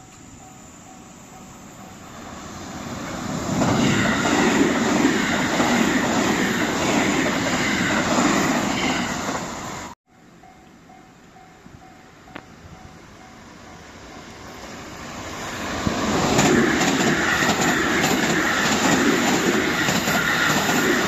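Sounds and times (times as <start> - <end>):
crossing bell ringing: 0.0 - 2.4, 10.1 - 14.9
electric train passing: 0.0 - 21.0.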